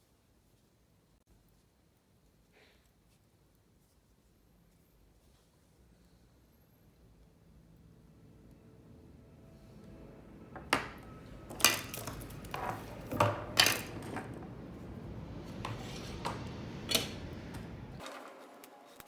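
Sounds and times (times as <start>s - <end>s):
low background noise: 0.0s - 19.0s
clicks and knocks of small tools: 10.6s - 19.0s.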